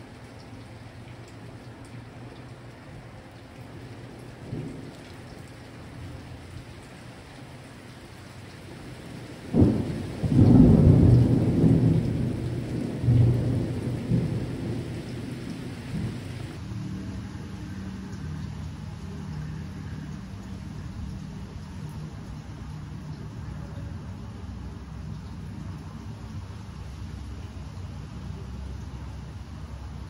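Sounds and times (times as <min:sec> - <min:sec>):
steady rain falling: 0:00.0 - 0:30.0
thunder clap rumbling: 0:08.7 - 0:16.6.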